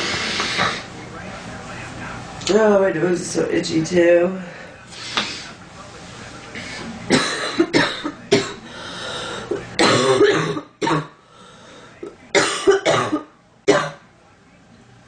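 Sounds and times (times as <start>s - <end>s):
girl coughing: 7.1s - 8.6s, 9.8s - 11.1s, 12.4s - 14.0s.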